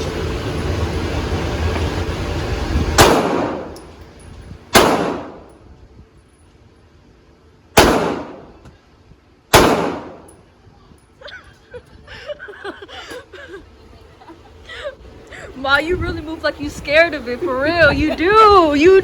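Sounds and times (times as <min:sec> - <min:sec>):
steady rushing noise: 0:00.0 - 0:06.1
gunshots with echo: 0:03.0 - 0:03.8, 0:04.7 - 0:05.5, 0:07.8 - 0:08.6, 0:09.5 - 0:10.3.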